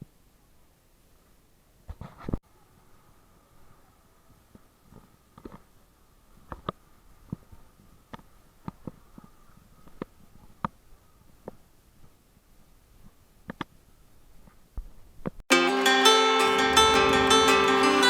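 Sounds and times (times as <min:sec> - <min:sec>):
faint clicks and taps: 0:06.4 - 0:12.2.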